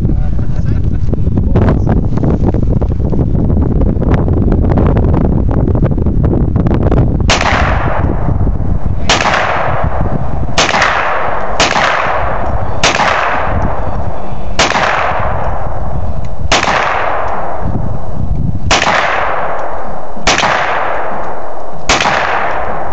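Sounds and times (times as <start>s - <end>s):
wind buffeting microphone: 0.0s - 22.9s
handgun shots echoing: 7.3s - 8.3s, 9.0s - 10.0s, 10.6s - 13.8s, 14.6s - 15.8s, 16.5s - 17.6s, 18.7s - 22.9s.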